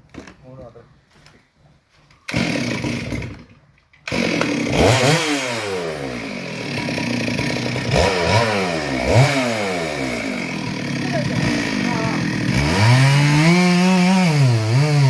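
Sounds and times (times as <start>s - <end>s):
chainsaw starting and revving: 2.3s - 15.0s.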